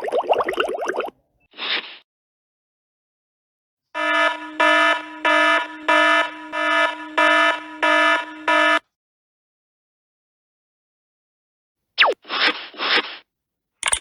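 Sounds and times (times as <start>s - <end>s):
electronic alarm pulsing buzzy tone: 4.0s - 8.8s.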